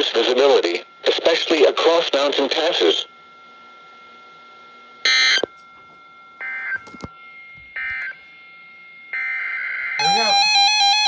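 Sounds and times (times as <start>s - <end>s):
weather radio beeps: 10.0s - 11.0s.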